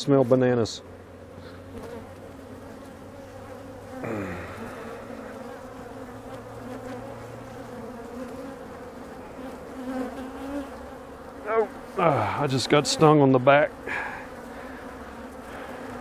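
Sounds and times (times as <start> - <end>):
honey bees buzzing: 0.0 - 16.0.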